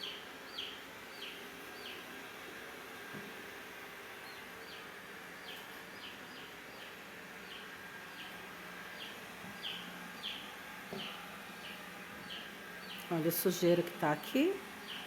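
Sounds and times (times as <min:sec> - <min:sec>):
bird chirping: 0:00.0 - 0:02.0, 0:04.2 - 0:13.8
robot vacuum humming: 0:00.0 - 0:15.0.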